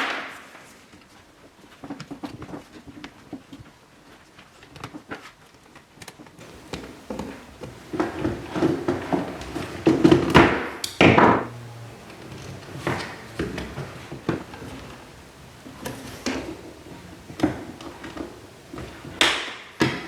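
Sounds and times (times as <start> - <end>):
taps and knocks of handling: 6.4 - 20.0.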